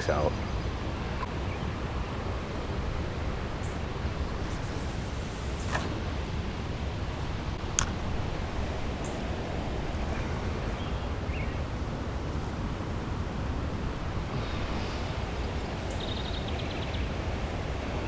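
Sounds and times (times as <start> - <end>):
river rushing: 0.0 - 18.0.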